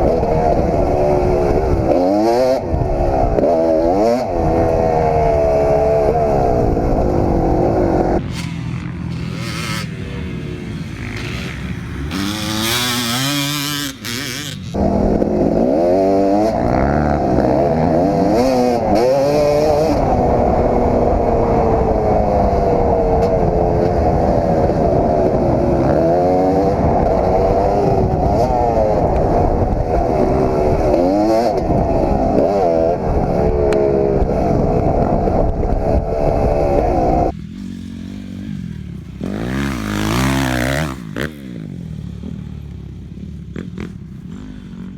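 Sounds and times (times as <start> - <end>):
motocross engine revving: 0.0 - 44.9.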